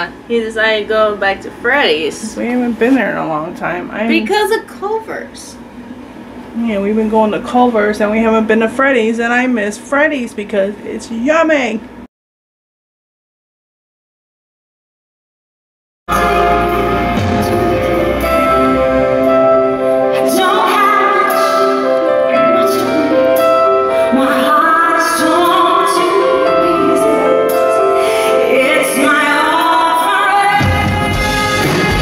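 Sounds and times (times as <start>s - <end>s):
sustained instrumental accompaniment: 16.1s - 32.0s
woman singing: 20.0s - 31.3s.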